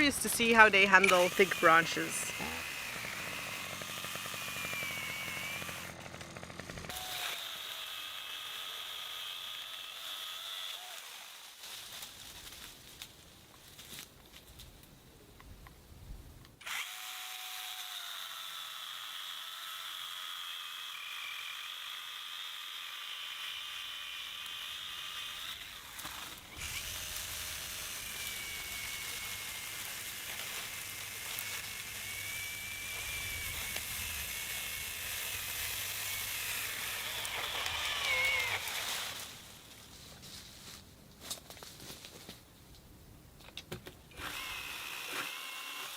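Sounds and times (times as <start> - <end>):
mini chainsaw cutting wood: 0.0 - 11.8, 16.6 - 39.6, 44.1 - 45.9.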